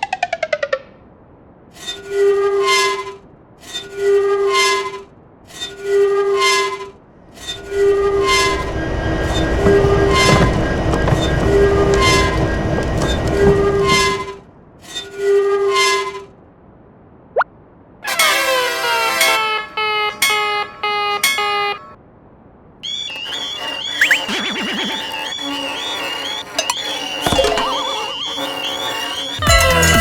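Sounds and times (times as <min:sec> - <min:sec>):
train rumbling past: 0:01.3 - 0:16.4
train horn blasts: 0:05.9 - 0:14.3, 0:18.0 - 0:22.0.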